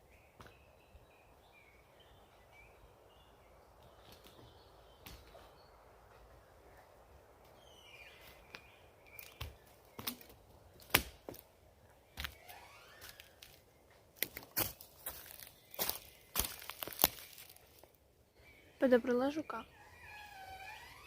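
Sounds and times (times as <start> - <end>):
footsteps on forest floor: 8.2 - 11.5, 12.1 - 18.0
twigs snapping underfoot: 8.5 - 11.4, 14.2 - 18.0.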